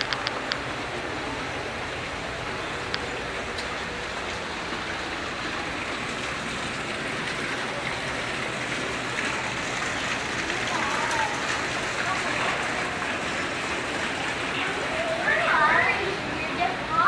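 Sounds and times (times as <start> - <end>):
running water rushing: 0.0 - 17.0.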